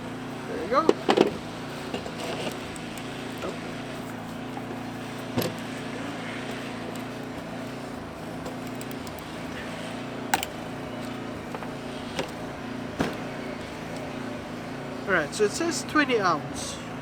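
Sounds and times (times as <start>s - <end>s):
engine humming: 0.0s - 17.0s
sharp clicks: 8.6s - 9.2s.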